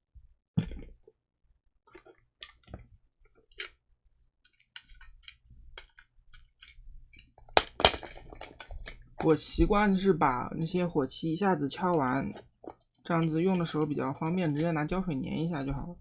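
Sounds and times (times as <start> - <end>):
sharp knock: 7.6 - 8.1.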